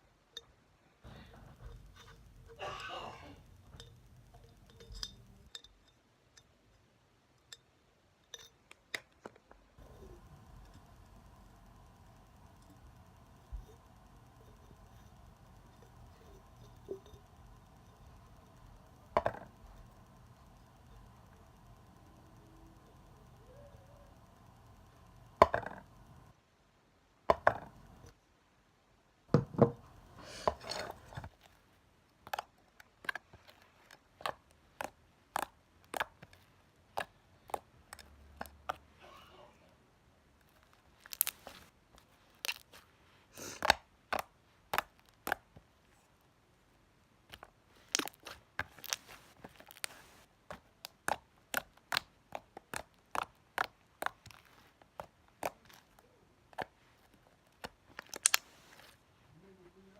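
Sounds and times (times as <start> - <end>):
slime clicking and popping: 34.2 - 38.8, 40.6 - 41.6, 43.6 - 45.5, 47.3 - 56.7, 57.6 - 58.6.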